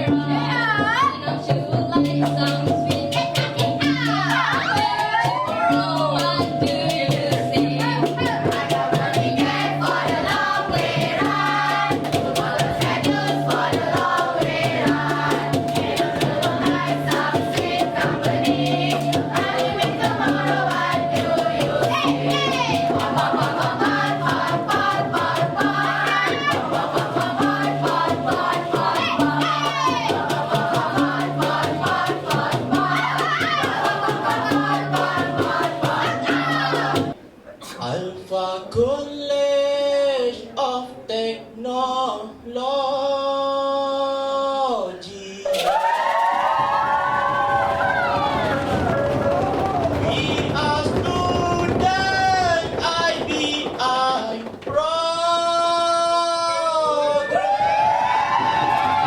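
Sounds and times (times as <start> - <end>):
fast rattling percussion: 0.0 - 37.2, 45.5 - 56.1
group singing together: 0.0 - 38.8.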